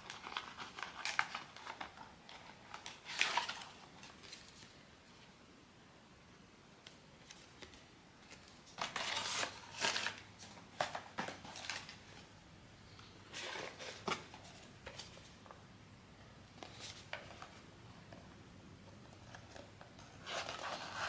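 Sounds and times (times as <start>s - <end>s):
packaging crinkling: 0.0s - 4.8s, 8.3s - 12.0s.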